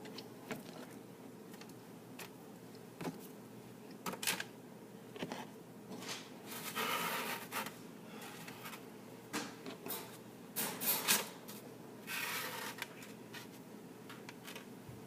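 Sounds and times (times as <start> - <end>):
short rustling scrape: 12.1 - 13.6.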